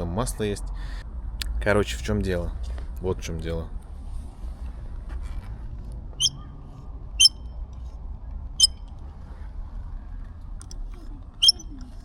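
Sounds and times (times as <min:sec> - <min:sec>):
low steady motorcycle rumble: 0:01.0 - 0:12.0
high-pitched metallic squeak: 0:07.2 - 0:07.4, 0:08.6 - 0:08.8, 0:11.4 - 0:11.7.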